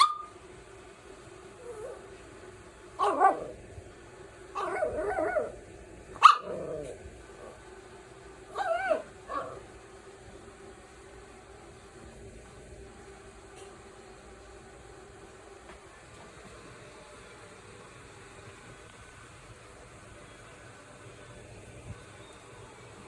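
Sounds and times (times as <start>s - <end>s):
puppy barking: 0.0s - 0.4s, 3.0s - 3.6s, 4.6s - 7.6s, 8.5s - 9.7s
puppy growling: 1.5s - 2.2s, 3.0s - 3.7s, 4.6s - 7.7s, 8.5s - 9.8s.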